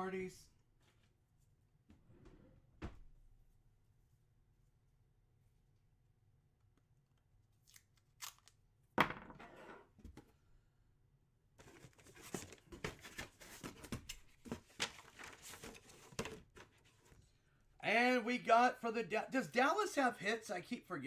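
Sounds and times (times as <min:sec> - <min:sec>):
packaging crinkling and rustling: 0:11.6 - 0:16.2.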